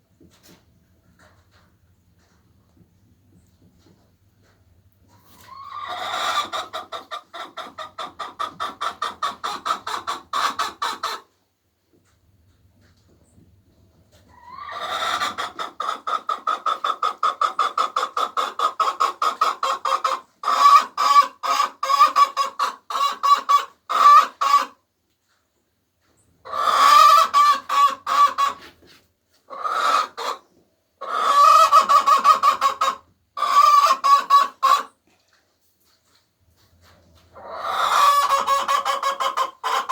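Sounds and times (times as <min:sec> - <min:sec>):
hen clucking: 0:03.3 - 0:11.4, 0:13.0 - 0:24.8, 0:26.4 - 0:28.8, 0:29.4 - 0:35.0, 0:36.9 - 0:39.9.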